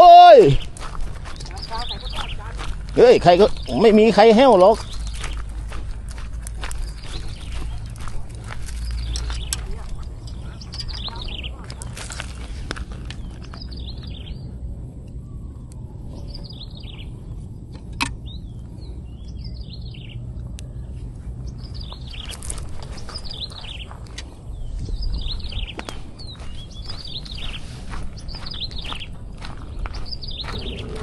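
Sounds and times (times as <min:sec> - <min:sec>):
birds chirping: 0:00.0 - 0:31.0
wind rumble on microphone: 0:04.8 - 0:31.0.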